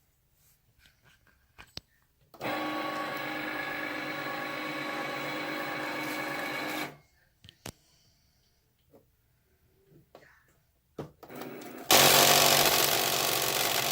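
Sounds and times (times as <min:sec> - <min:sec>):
cutting machine motor grinding: 0:02.4 - 0:06.9, 0:11.9 - 0:13.9.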